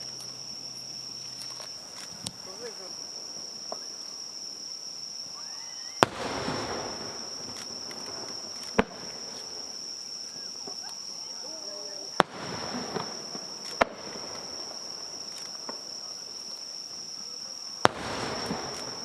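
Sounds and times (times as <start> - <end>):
firework crackling: 0.0 - 4.1, 5.2 - 19.0
fireworks bursting: 0.0 - 19.0
insect trill: 0.0 - 19.0.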